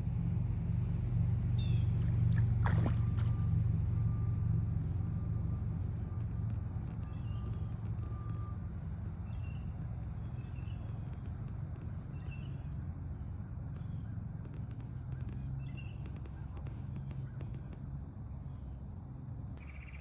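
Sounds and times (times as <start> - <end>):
low rumble: 0.0 - 18.2
high-pitched hum: 0.0 - 20.0
bird chirps: 1.6 - 1.9, 7.0 - 8.3, 9.2 - 11.0, 12.1 - 12.7, 19.6 - 20.0.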